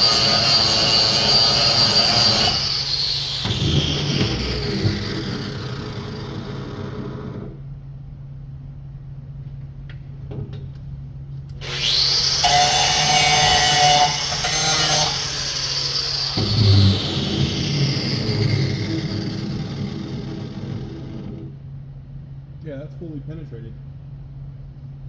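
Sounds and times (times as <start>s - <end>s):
power tool whine: 0.0s - 7.6s, 11.6s - 21.6s
low hum: 0.0s - 7.7s, 11.6s - 21.7s.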